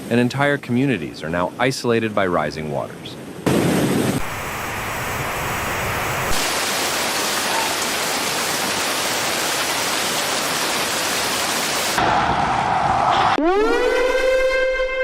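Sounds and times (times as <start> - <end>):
rushing water: 3.4 - 12.1.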